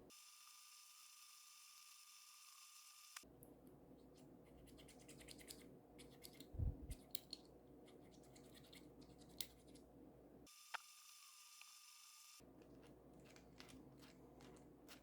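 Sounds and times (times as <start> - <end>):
faint clicks and scratching: 4.0 - 9.9, 12.4 - 15.0.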